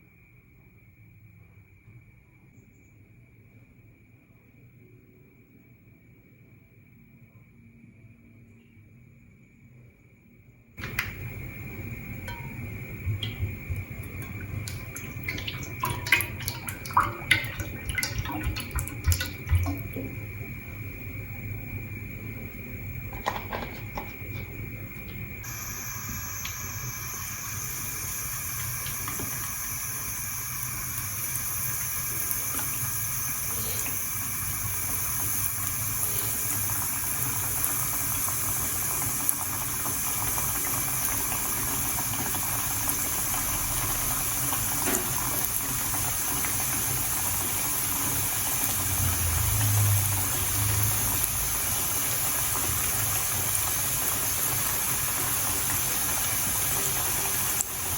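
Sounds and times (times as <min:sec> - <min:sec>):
potatoes sizzling in hot oil: 0:25.4 - 0:57.9.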